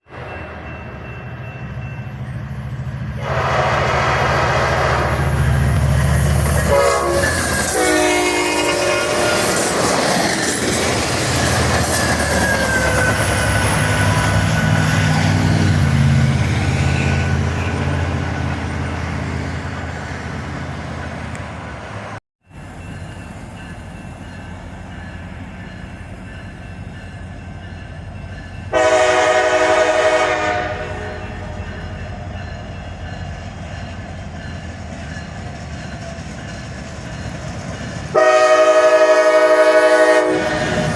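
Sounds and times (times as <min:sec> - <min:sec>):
passing train rumbling: 0:00.0 - 0:40.9
train horn: 0:03.2 - 0:05.5, 0:06.6 - 0:09.8, 0:28.7 - 0:32.3, 0:38.1 - 0:40.9.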